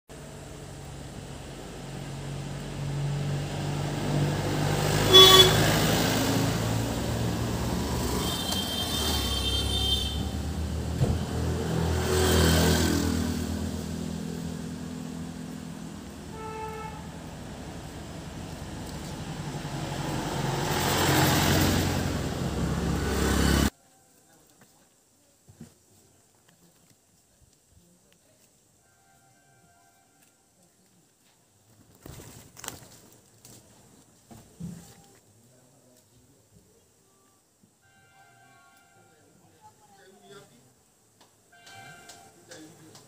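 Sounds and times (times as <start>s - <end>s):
vehicles driving past: 0.1s - 23.7s
car horn toots: 5.0s - 5.8s, 8.2s - 10.4s, 16.3s - 17.1s, 41.5s - 42.6s.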